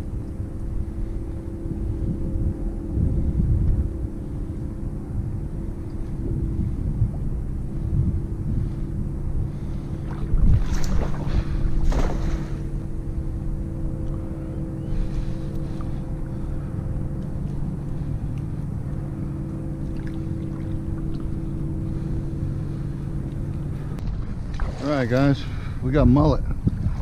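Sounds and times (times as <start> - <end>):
motor humming: 0.0 - 25.8
wind noise on microphone: 0.0 - 27.0.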